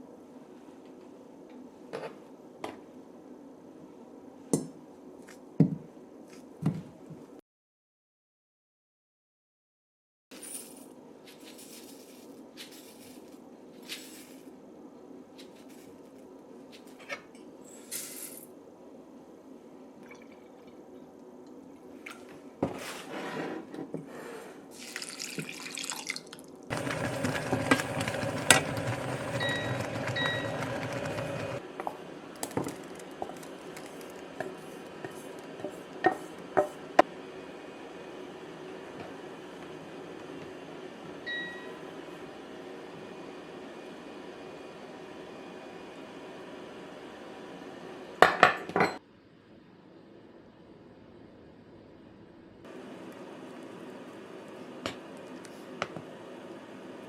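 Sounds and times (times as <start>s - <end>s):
water running from a tap: 24.8s - 27.1s.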